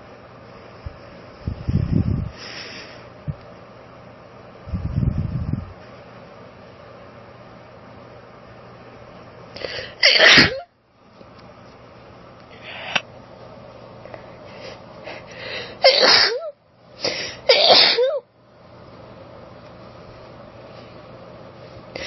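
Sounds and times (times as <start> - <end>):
woman sneezing: 9.6 - 10.7, 15.8 - 18.2.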